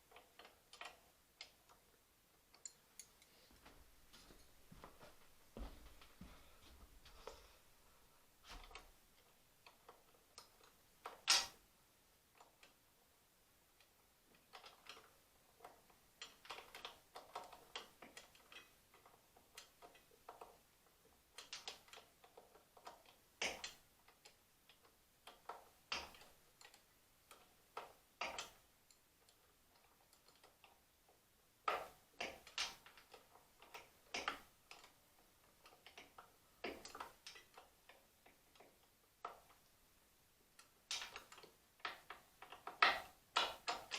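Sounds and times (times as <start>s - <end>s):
small metal parts and tools clicking: 0.0s - 1.8s, 2.5s - 3.4s, 8.6s - 11.6s, 13.7s - 39.8s, 40.5s - 43.9s.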